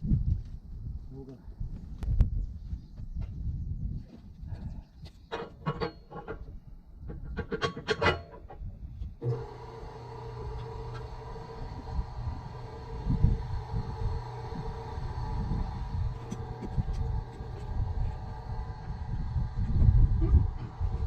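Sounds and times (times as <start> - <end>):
rasping scraping strokes: 7.1 - 8.6.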